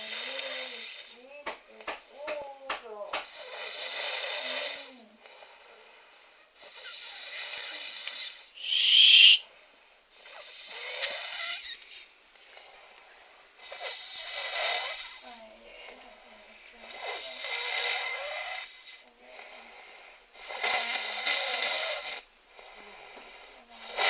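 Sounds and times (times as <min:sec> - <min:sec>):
person snoring heavily: 0:00.0 - 0:01.2
high whistle: 0:08.6 - 0:09.5.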